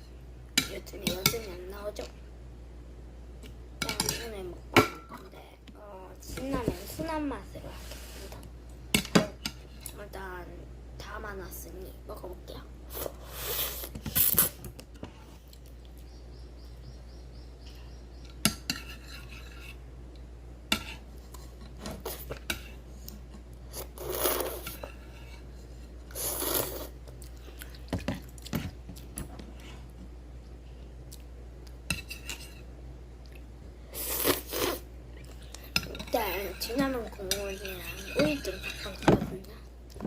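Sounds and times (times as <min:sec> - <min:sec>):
utensils clinking against a bowl: 0:03.8 - 0:05.2, 0:35.2 - 0:39.6.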